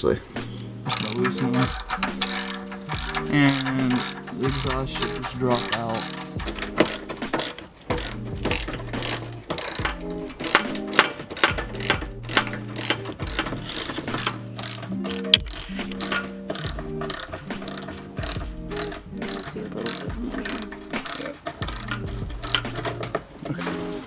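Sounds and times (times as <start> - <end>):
hip-hop beat music: 0.3 - 7.3
hi-hat and snare hits: 0.4 - 22.8.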